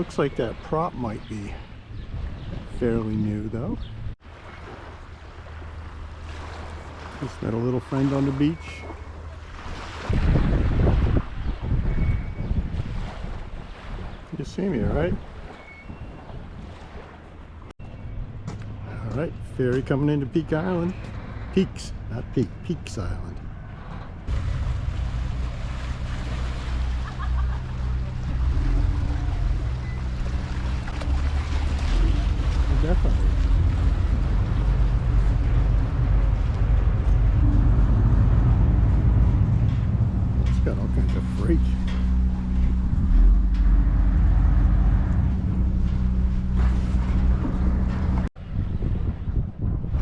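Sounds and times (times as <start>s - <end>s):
wind buffeting microphone: 0.0s - 7.6s, 9.0s - 50.0s
water: 0.0s - 50.0s
ferry diesel engines rumbling: 17.2s - 48.3s.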